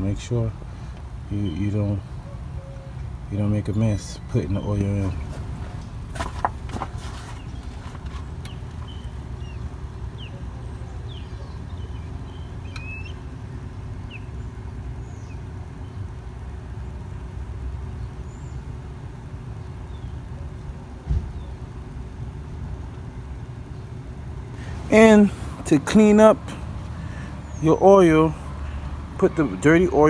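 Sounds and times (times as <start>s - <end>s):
faint steady hum: 0.0s - 30.0s
motor vehicle rumble: 0.0s - 30.0s
high bird chirps: 6.9s - 13.4s.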